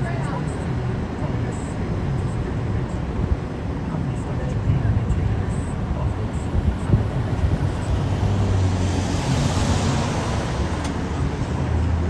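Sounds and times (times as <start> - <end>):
diesel engine rumble: 0.0 - 12.0.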